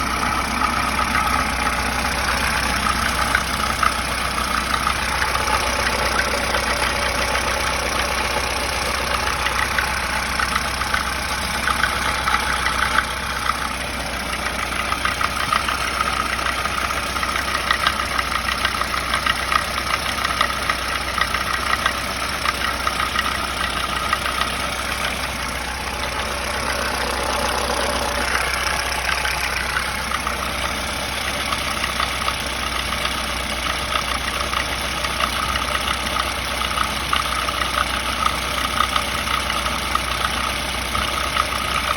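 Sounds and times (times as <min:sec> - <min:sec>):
car engine idling with knock: 0:00.0 - 0:41.9.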